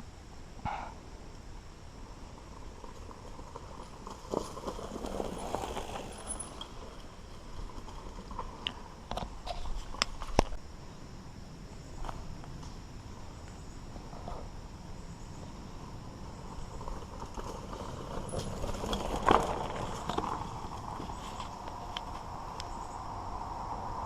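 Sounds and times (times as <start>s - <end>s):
bike tyres crunching on dirt: 1.8s - 10.7s, 11.8s - 24.0s
bike rattling and knocking: 16.6s - 21.8s.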